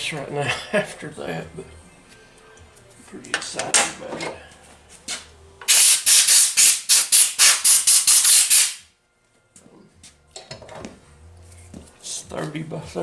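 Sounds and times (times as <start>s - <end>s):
short hissing bursts: 5.7s - 8.8s.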